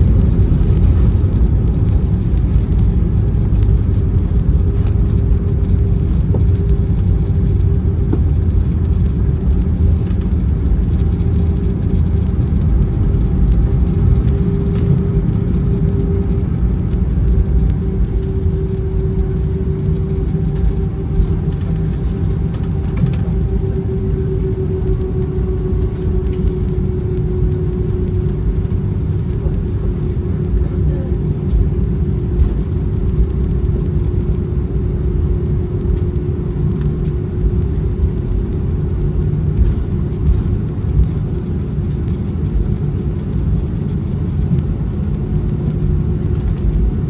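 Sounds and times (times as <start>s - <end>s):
airplane cabin engine rumble: 0.0s - 47.0s.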